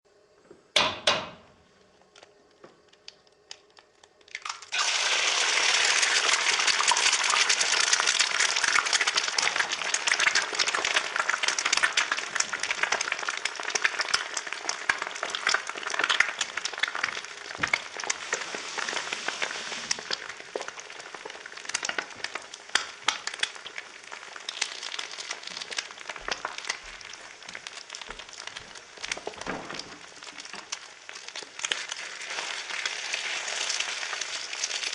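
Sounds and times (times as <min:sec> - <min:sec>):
egg cracking: 0:02.0 - 0:34.9
egg sizzling in hot oil: 0:02.8 - 0:34.9.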